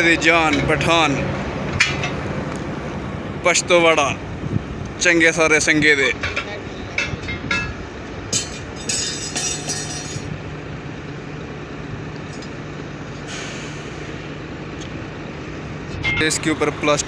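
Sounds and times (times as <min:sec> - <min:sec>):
engine humming: 0:00.0 - 0:17.0
clinking: 0:06.2 - 0:10.3
air hissing: 0:13.2 - 0:14.3.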